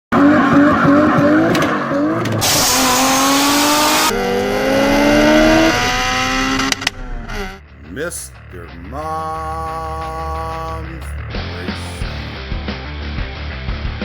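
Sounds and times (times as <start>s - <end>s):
race car engine accelerating: 0.1s - 7.6s.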